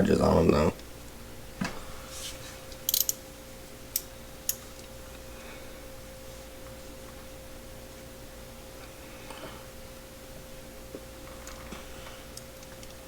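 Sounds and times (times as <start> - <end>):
faint steady hum: 0.0 - 13.0
metal wrenches clicking: 2.9 - 3.2.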